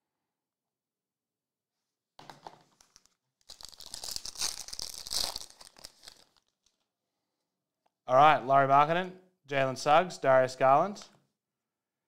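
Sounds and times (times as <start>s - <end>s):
card packaging torn and crinkled: 2.8s - 6.8s.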